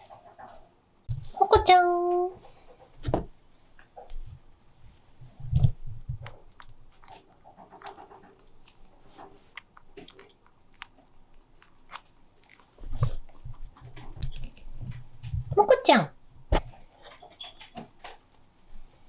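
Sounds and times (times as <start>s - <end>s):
guinea pig chewing: 4.9s - 15.4s.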